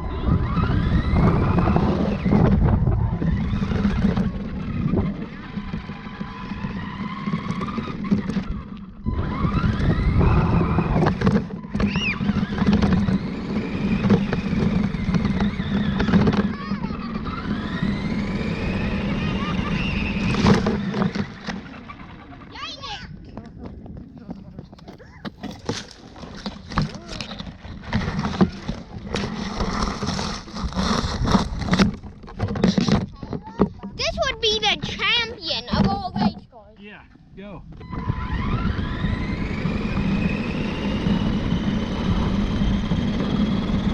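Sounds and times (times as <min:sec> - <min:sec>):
toy truck motor whine: 0:00.0 - 0:22.7, 0:37.8 - 0:43.9
wheels and chassis rattle: 0:00.0 - 0:43.9.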